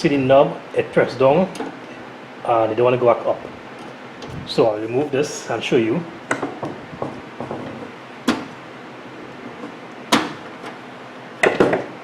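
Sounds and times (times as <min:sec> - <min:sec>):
sharp knocks: 0:06.3 - 0:08.6, 0:10.1 - 0:10.5.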